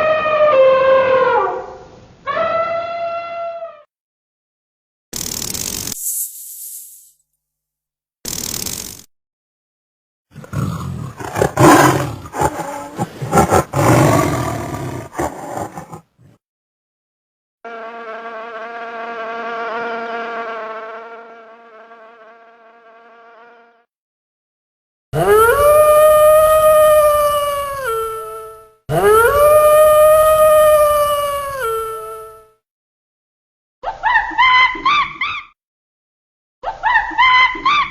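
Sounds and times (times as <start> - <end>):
canine howls: 0.0 - 1.7, 25.2 - 32.3
insect buzzing: 5.2 - 7.2, 8.3 - 9.1, 17.7 - 23.9.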